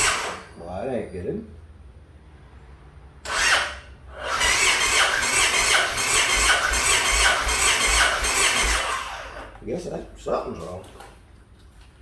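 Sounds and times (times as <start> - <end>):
starter motor cranking engine: 0.0 - 0.6, 3.2 - 9.6.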